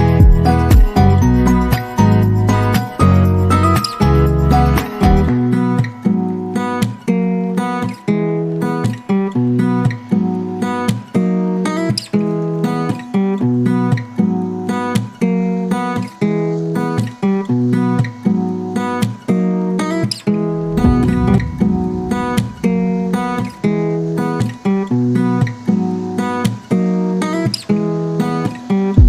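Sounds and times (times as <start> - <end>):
strummed acoustic guitar: 0.0 - 29.0
deep bass: 20.5 - 23.6.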